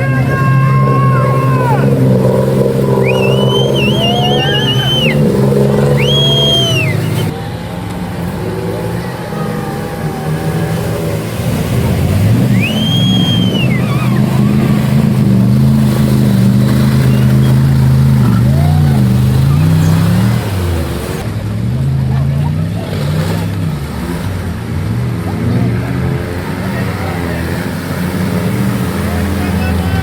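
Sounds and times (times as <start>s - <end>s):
off-road vehicle engine running: 0.0s - 30.0s
high whistle-like tones: 2.8s - 7.4s, 12.3s - 14.5s.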